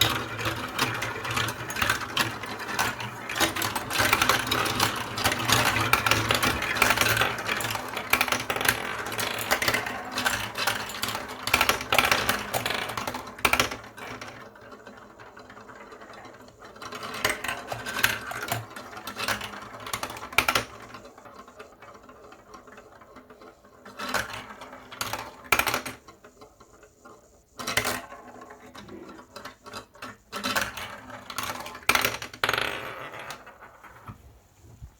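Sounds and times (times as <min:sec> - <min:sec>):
marbles rolling and clattering: 0:00.0 - 0:26.5, 0:27.6 - 0:34.2.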